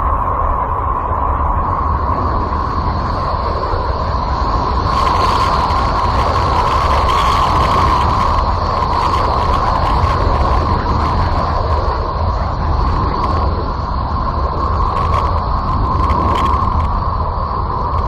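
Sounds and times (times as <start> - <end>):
rumbling hissing drone: 0.0 - 18.0.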